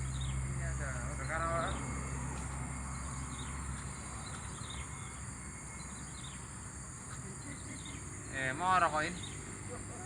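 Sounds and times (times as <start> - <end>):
high insect drone: 0.0 - 10.0.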